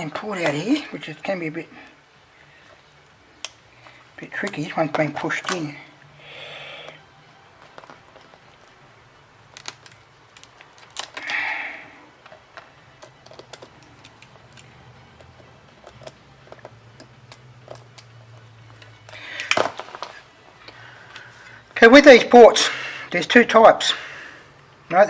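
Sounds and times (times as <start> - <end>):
faint steady hum: 0.0 - 25.0
small tools clicking: 9.5 - 11.4, 12.2 - 20.1.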